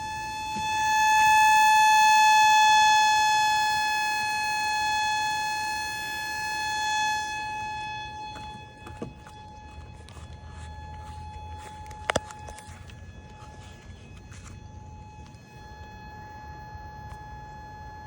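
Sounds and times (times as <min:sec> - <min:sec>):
tornado siren steady high tone: 0:00.0 - 0:18.0.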